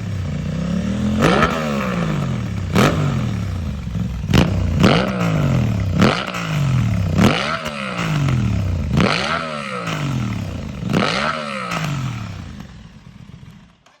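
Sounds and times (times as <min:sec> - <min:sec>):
motorcycle engine revving: 0:00.0 - 0:14.0.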